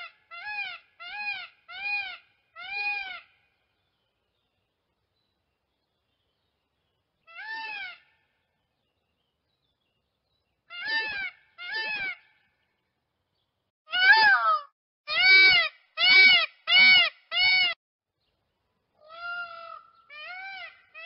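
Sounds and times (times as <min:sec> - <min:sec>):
peafowl wailing calls: 0:10.7 - 0:12.4, 0:19.0 - 0:21.0.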